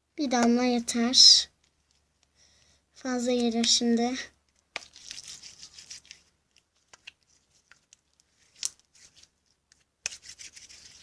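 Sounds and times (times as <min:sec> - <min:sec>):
slime crackling and popping: 0:04.7 - 0:08.8.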